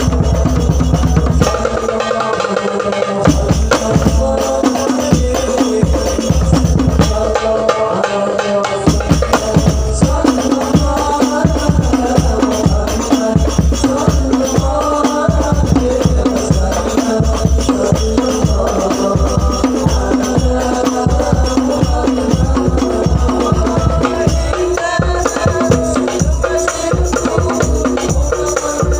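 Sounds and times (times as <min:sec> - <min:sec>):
hand drum rhythm: 0:00.0 - 0:28.9.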